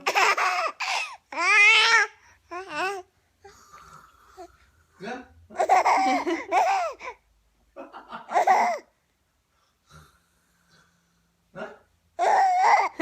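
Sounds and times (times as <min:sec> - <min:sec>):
young child laughing: 0:05.6 - 0:07.0.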